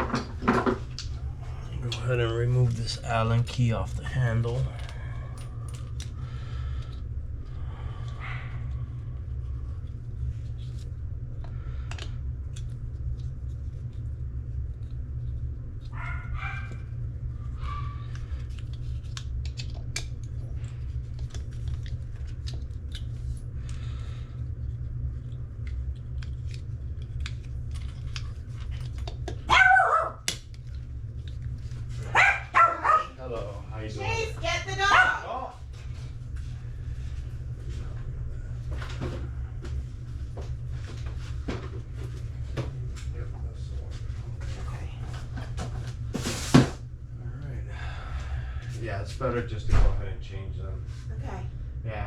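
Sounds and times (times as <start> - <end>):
steady low hum: 0.0 - 52.0
dog barking: 8.2 - 8.6, 16.0 - 16.8, 29.5 - 30.2, 32.0 - 33.2, 34.8 - 35.4.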